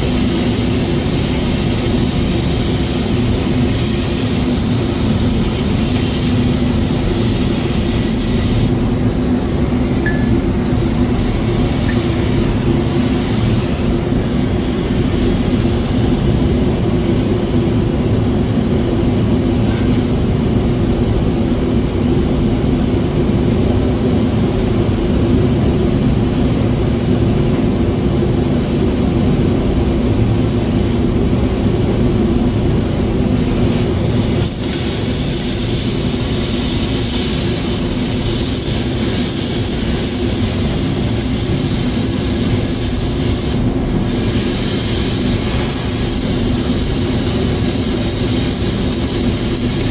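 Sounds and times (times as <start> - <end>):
loud machine hum: 0.0 - 21.9.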